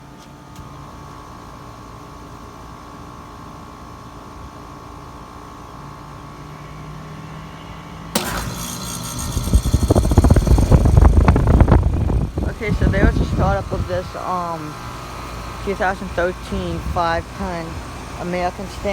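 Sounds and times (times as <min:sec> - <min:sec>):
faint hum with high tone: 0:00.0 - 0:18.9
heat pump running: 0:08.2 - 0:18.9.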